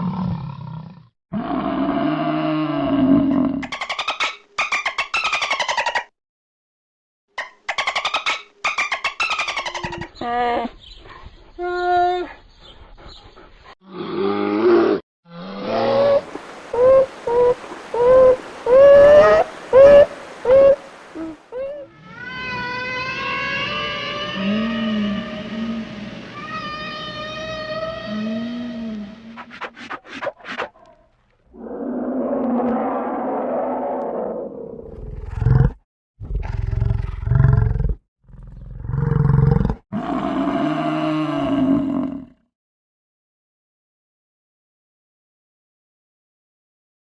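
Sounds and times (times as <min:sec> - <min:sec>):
large animal roaring: 0:00.0 - 0:03.6, 0:31.5 - 0:42.4
long drawn-out animal call: 0:13.9 - 0:29.4, 0:39.9 - 0:42.4
short arching animal calls: 0:15.8 - 0:25.4.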